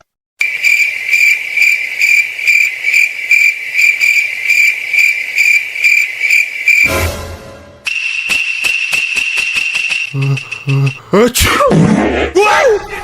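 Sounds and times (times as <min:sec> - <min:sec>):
cricket chirping trill: 0:00.4 - 0:06.9, 0:07.9 - 0:11.4.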